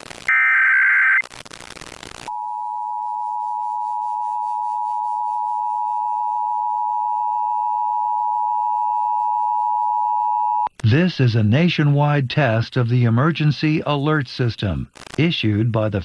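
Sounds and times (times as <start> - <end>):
static: 0.0 - 2.3, 10.8 - 16.0.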